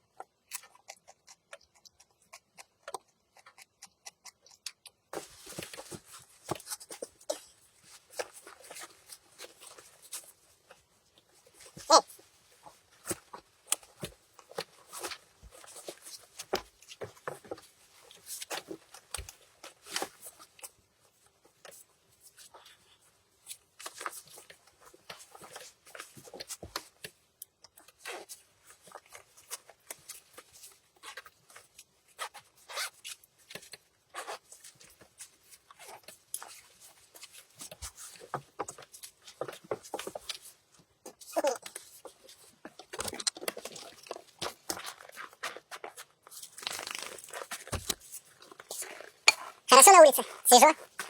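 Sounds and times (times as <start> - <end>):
eating clicks and scrapes: 0.0 - 20.8, 21.5 - 49.7.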